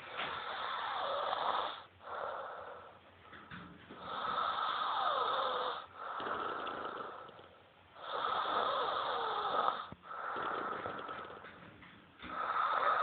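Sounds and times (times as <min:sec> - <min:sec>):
person snoring: 0:04.0 - 0:11.4, 0:12.3 - 0:13.0.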